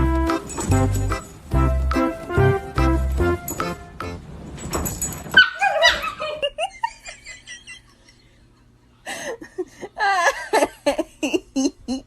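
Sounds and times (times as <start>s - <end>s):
person giggling: 9.1s - 12.0s.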